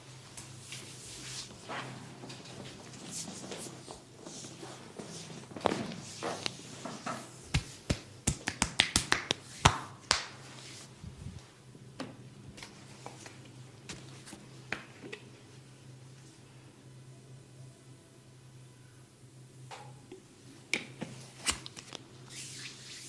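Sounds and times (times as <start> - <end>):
hands slapping and snapping: 7.5 - 10.4.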